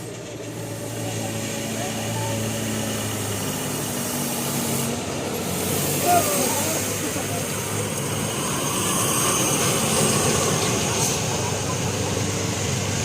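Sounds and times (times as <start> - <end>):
large vehicle engine humming: 0.0 - 13.0
faint voices: 6.0 - 8.3, 10.5 - 13.0.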